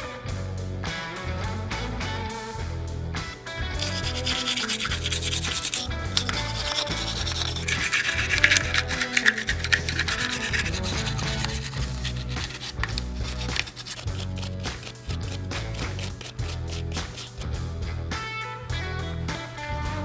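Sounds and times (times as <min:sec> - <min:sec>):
background music with bass: 0:00.0 - 0:20.0
scrubbing pistol parts: 0:03.8 - 0:17.6.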